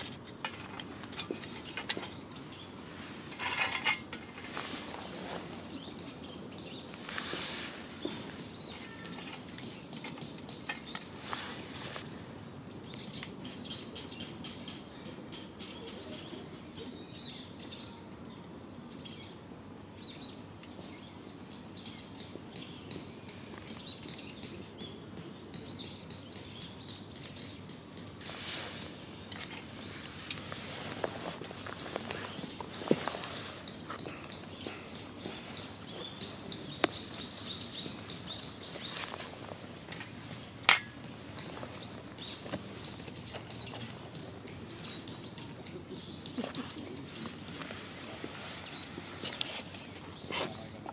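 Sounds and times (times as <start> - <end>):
burning wood crackling and popping: 0.0 - 18.4, 19.1 - 50.9
small birds chirping: 0.0 - 50.9
sharp pops of burning wood: 21.3 - 45.6
small bird chirping: 31.6 - 39.8.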